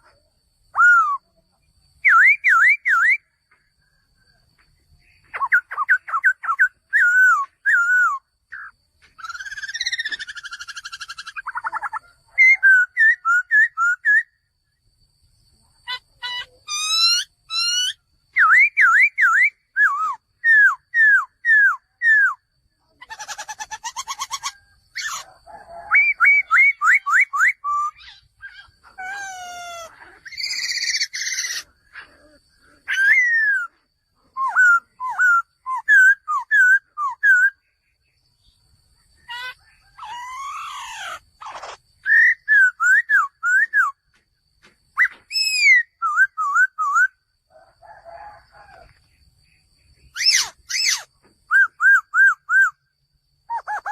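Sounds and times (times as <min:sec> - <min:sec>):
laughingthrush singing whistles: 0:00.6 - 0:01.4, 0:02.0 - 0:03.4, 0:05.0 - 0:14.5, 0:15.8 - 0:38.6, 0:39.2 - 0:44.1, 0:44.9 - 0:47.3, 0:49.6 - 0:53.9
harsh buzzy bird calls: 0:04.9 - 0:14.4, 0:15.6 - 0:38.6, 0:39.2 - 0:44.1, 0:49.6 - 0:52.8.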